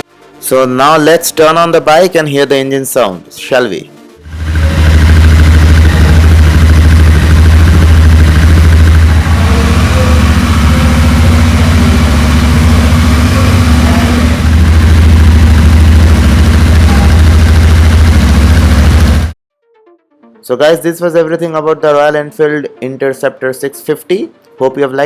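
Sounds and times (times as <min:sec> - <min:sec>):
motorcycle engine idling: 0:04.2 - 0:19.4.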